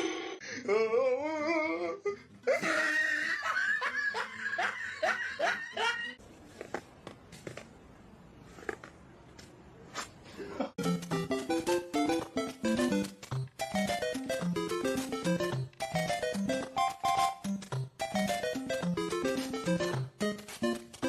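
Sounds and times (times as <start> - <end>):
person laughing: 2.5 - 6.2.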